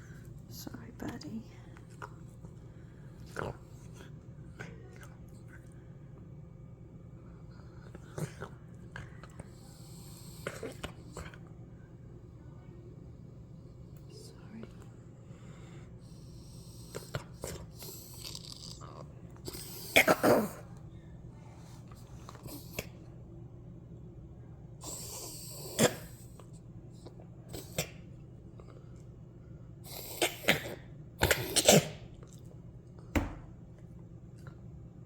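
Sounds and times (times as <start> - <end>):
person coughing harshly: 19.9 - 20.6.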